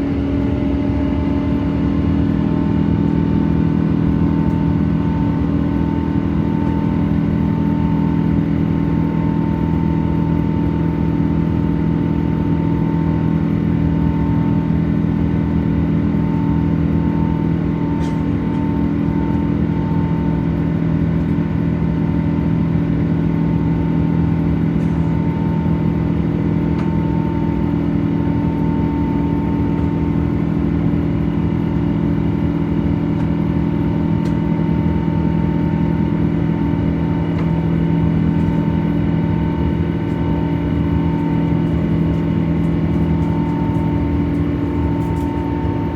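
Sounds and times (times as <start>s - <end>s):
jet engine cabin drone: 0.0s - 45.9s
faint whining tone: 24.8s - 45.9s.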